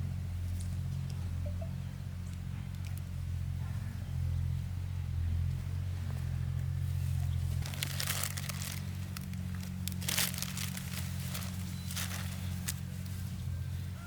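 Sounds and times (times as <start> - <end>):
steady low hum: 0.0 - 14.0
rustling and crinkling: 6.1 - 13.5.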